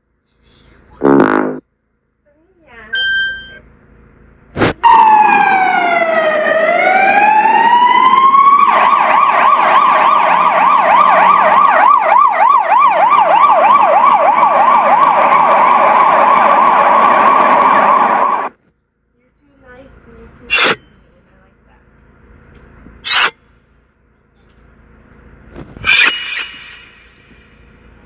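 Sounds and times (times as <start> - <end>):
electronic siren wailing and yelping: 1.0 - 1.6, 4.8 - 18.5, 25.8 - 27.0.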